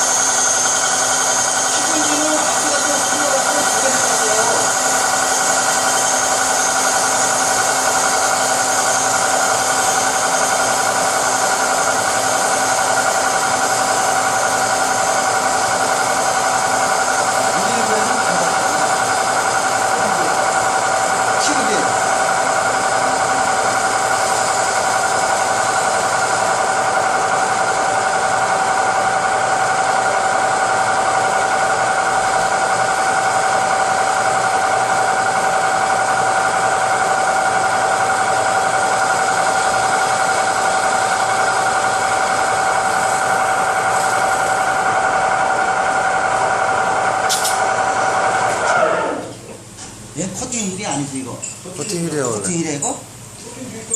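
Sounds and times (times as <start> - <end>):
metal lathe whine: 0.0 - 49.4.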